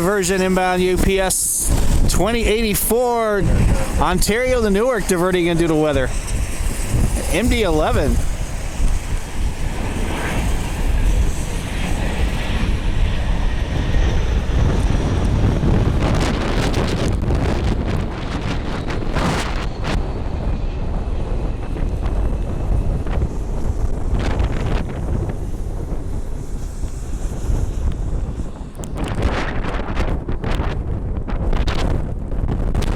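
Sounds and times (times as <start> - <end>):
gusty wind buffeting microphone: 0.0 - 32.9.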